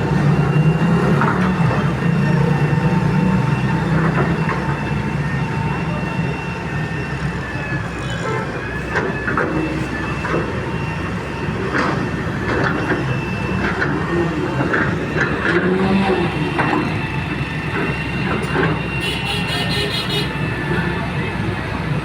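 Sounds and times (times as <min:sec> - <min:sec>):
excavator diesel engine: 0:00.0 - 0:22.0.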